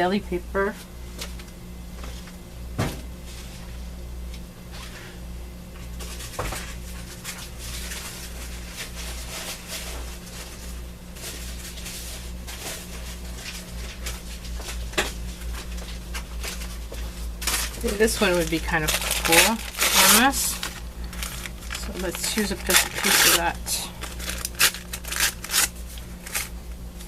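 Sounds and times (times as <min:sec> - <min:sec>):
steady low hum: 0:00.0 - 0:27.0
paper rustling and crackling: 0:06.0 - 0:27.0.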